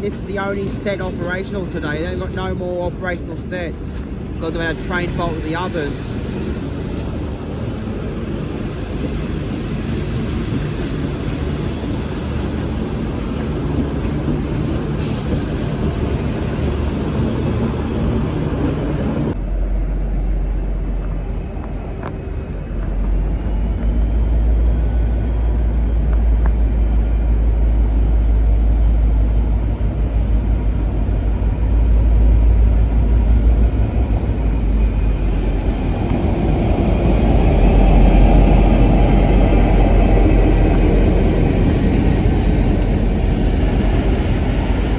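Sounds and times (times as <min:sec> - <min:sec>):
diesel locomotive engine rumble: 0:00.0 - 0:44.9
high whine: 0:00.0 - 0:44.9.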